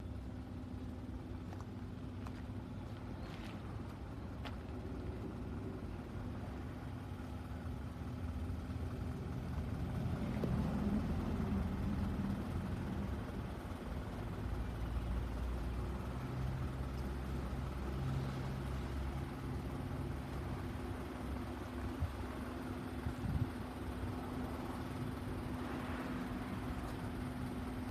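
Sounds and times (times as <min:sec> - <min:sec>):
truck engine droning: 0:00.0 - 0:27.9.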